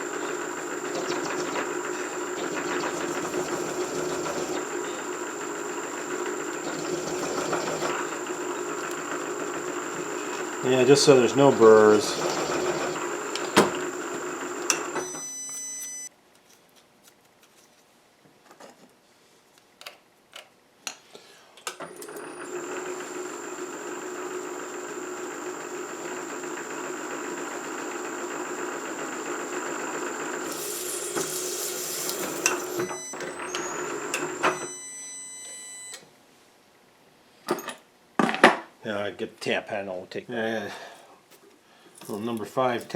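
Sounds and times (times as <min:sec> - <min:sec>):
milling machine motor humming: 0:00.0 - 0:15.2, 0:22.2 - 0:34.7.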